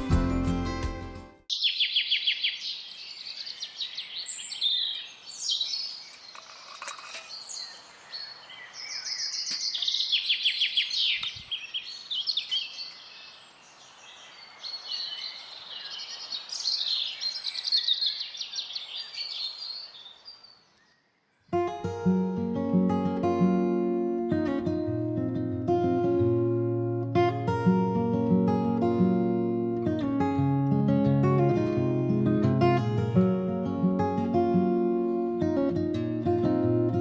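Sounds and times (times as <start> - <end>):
songbirds trilling and chirping: 1.5 - 21.7.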